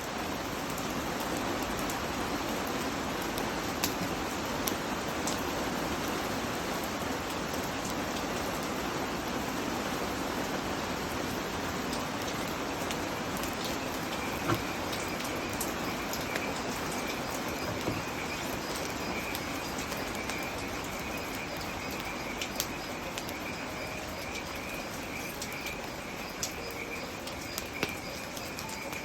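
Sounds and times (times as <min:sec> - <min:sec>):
rain hissing: 0:00.0 - 0:29.0
campfire crackling: 0:12.2 - 0:29.0.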